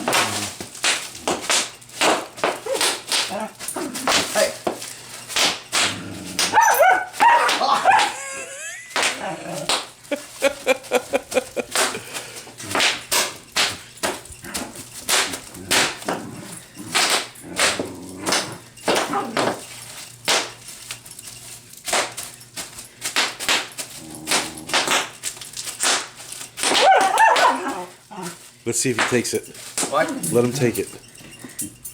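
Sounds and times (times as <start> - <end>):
bubble wrap popping: 0.0 - 30.7
dog whining: 2.5 - 4.5, 5.8 - 12.8, 14.3 - 19.6, 26.7 - 28.6
dog barking: 6.4 - 8.2, 26.7 - 28.4.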